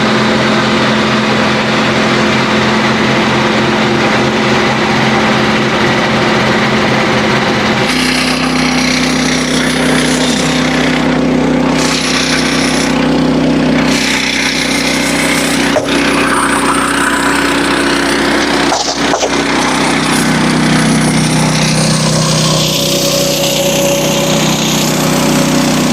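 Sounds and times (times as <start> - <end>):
sawmill gas engine running: 0.0 - 25.9
band blade cutting log: 7.7 - 25.9.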